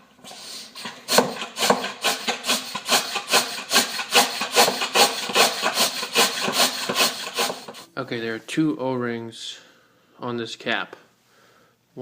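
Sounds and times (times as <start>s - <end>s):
hand pump rasping strokes: 0.0s - 7.9s.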